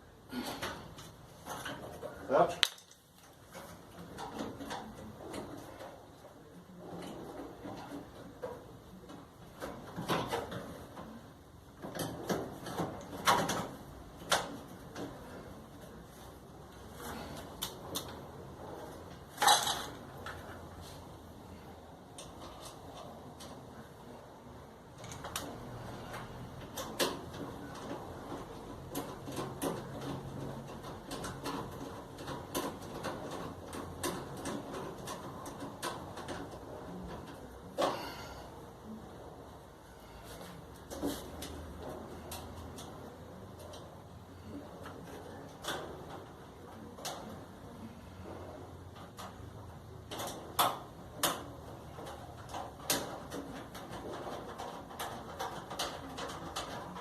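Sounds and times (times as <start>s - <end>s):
metal and plastic parts clattering: 18.8s - 20.7s, 24.9s - 38.3s, 48.9s - 57.0s.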